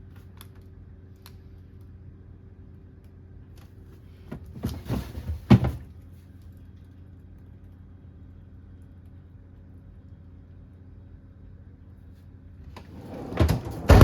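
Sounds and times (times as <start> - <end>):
low electrical hum: 0.0 - 14.0
household items rustling and clattering: 4.3 - 5.8, 12.8 - 14.0.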